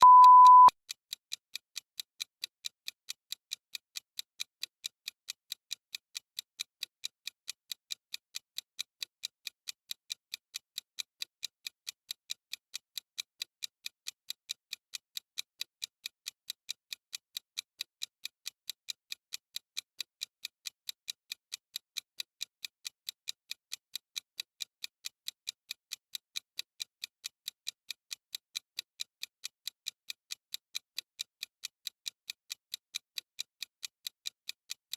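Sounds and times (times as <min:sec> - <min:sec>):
timer ticking: 0:00.0 - 0:00.8, 0:01.8 - 0:34.9.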